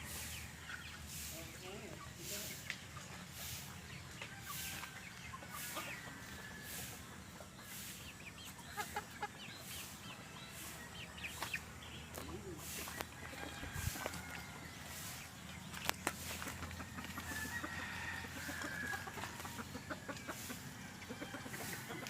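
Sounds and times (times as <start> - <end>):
chickens clucking: 0.0 - 22.0.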